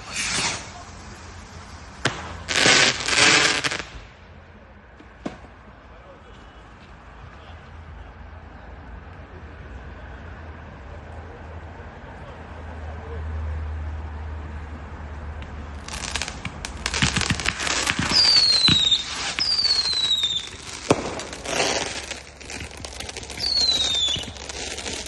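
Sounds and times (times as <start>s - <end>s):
falling firework whistles: 0.0s - 4.0s, 16.0s - 25.0s
fireworks crackling and banging: 0.0s - 7.6s, 15.4s - 25.0s.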